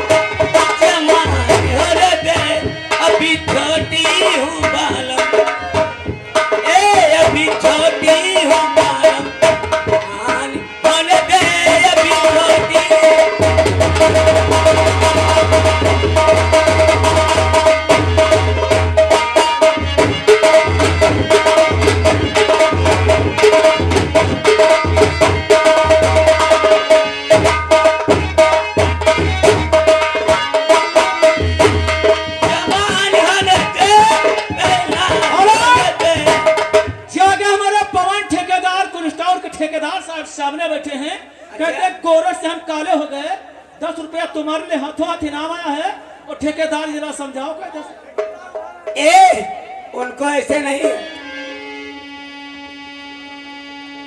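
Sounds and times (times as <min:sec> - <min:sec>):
hand drums fast rhythm: 0:00.0 - 0:10.5, 0:11.1 - 0:37.1
ornamented melody instrument: 0:00.0 - 0:37.1, 0:50.2 - 0:54.0
tabla: 0:00.0 - 0:54.0.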